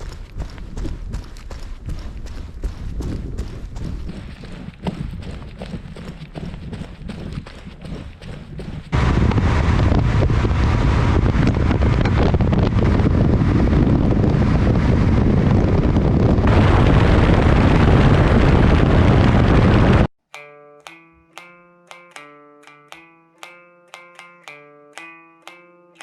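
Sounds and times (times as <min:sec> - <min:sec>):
wind buffeting microphone: 0:00.0 - 0:20.1
guitar music: 0:20.3 - 0:26.0.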